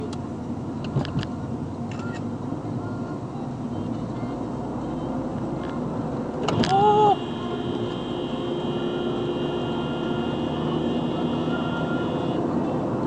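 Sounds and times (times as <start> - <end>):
car running: 0.0 - 13.0.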